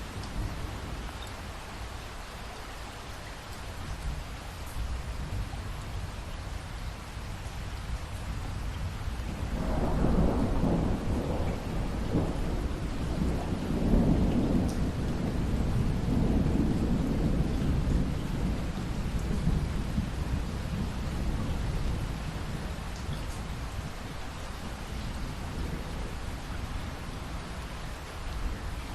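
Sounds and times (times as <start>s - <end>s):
steady rain: 0.0s - 28.9s
thunder rumbling: 9.4s - 27.6s.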